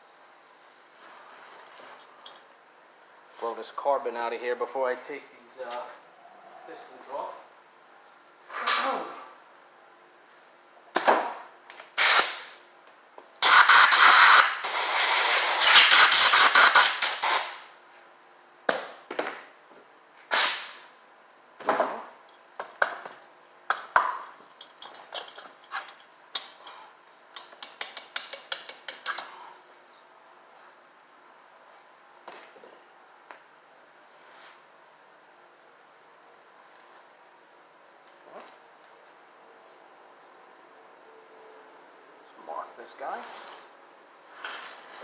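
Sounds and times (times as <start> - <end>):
air blow gun hissing blasts: 12.0 - 12.6, 13.4 - 17.7, 20.3 - 20.9.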